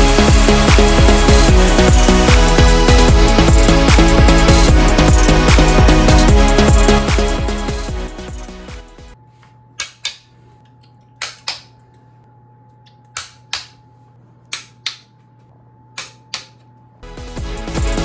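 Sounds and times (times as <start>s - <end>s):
music: 0.0s - 9.2s, 17.0s - 18.0s
sharp clicks in pairs: 11.2s - 11.7s, 14.5s - 15.1s, 16.0s - 16.6s.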